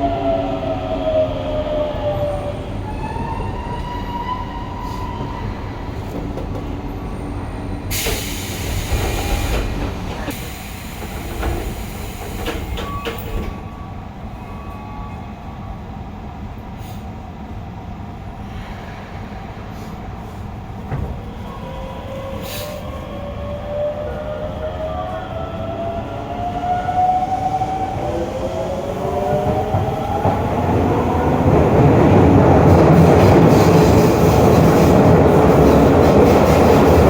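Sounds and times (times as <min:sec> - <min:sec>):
train rumble from inside: 0:00.0 - 0:37.0.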